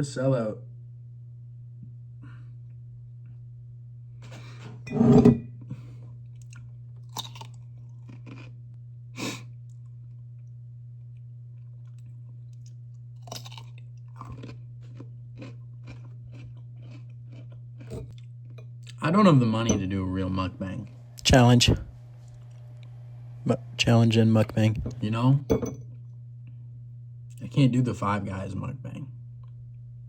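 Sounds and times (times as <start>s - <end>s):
person chewing crunchy pickle: 6.3s - 8.6s, 9.3s - 19.0s.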